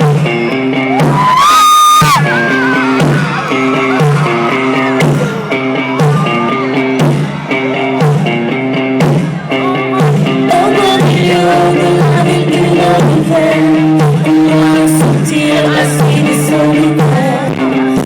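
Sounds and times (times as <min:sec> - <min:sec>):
band playing pop-rock song: 0:00.0 - 0:18.0
woman singing: 0:10.3 - 0:18.0.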